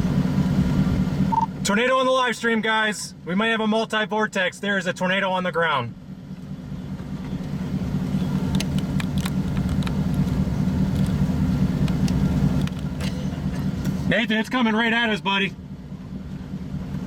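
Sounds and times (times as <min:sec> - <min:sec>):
car engine and road drone: 0:00.0 - 0:17.0.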